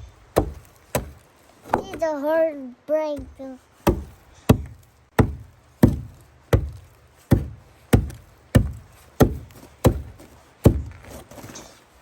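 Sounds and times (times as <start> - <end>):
short dull thuds: 0.0 - 2.1, 3.1 - 11.7
ice pick striking ice: 0.3 - 2.0, 3.8 - 11.5.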